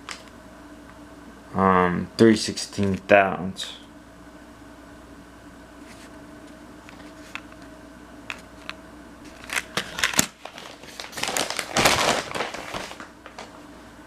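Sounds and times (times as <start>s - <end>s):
plastic packaging crinkling: 9.3s - 13.6s.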